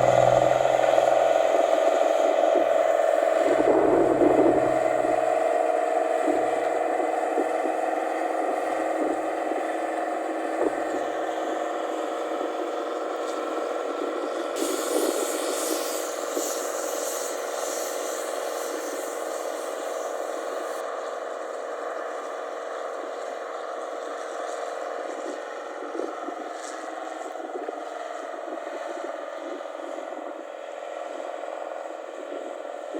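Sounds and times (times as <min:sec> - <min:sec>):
combine harvester engine humming: 0:00.0 - 0:22.1.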